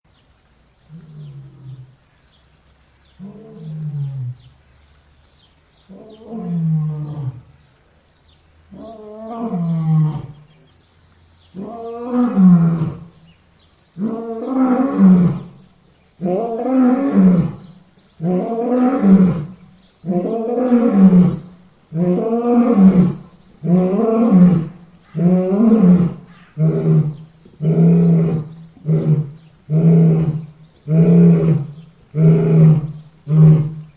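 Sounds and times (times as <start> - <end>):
lion roaring: 16.2 - 33.9.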